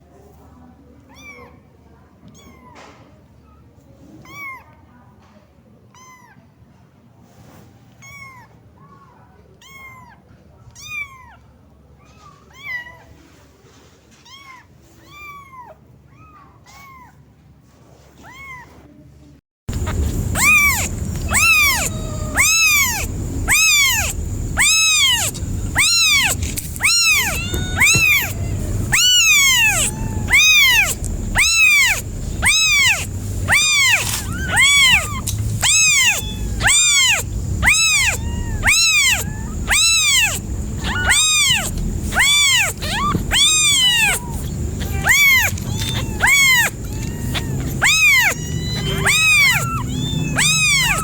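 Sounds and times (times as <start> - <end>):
kitten meowing: 10.8 - 11.3, 19.7 - 51.0.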